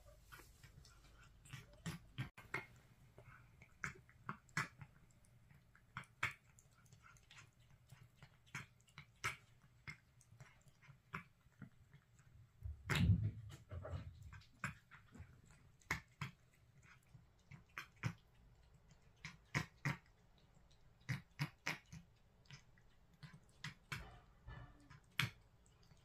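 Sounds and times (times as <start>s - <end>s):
animal sound: 0.0s - 12.1s, 12.7s - 26.0s
cat chewing clicks: 14.3s - 24.2s.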